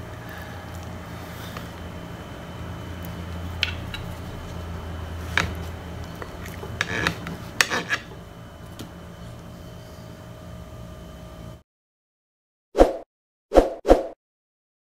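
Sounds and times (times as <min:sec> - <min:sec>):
steady low hum: 0:00.0 - 0:11.6.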